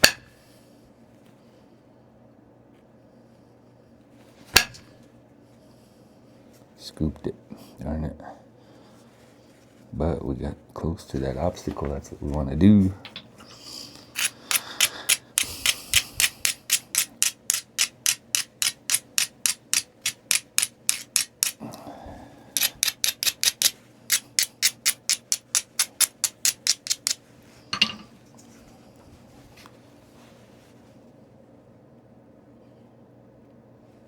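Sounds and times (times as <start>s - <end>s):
abrader scraping stone: 14.1s - 17.9s.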